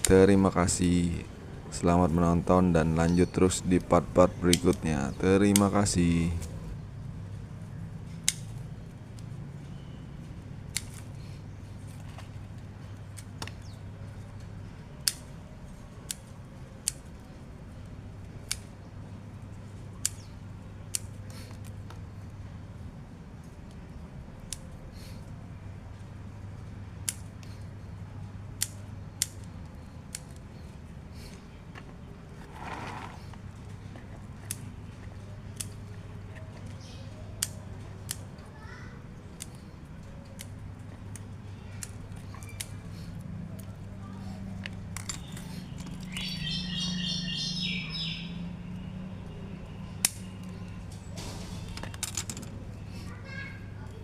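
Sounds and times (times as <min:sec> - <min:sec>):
pruning shears snipping branches: 0:04.4 - 0:06.6, 0:10.7 - 0:11.2
small bird chirping: 0:45.2 - 0:48.5.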